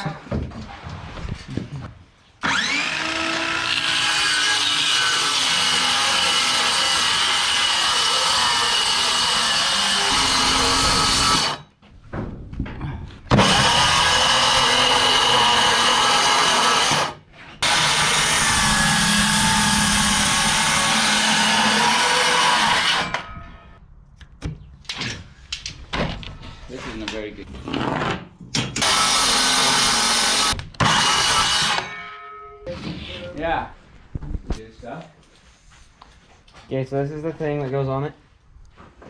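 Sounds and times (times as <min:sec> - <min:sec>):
circular saw cutting wood: 0:02.4 - 0:11.7, 0:13.3 - 0:23.3, 0:28.8 - 0:32.0.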